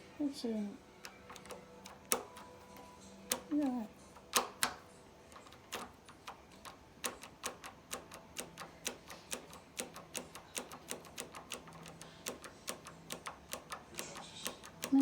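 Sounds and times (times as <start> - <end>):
deadbolt lock clicking: 1.0 - 15.0.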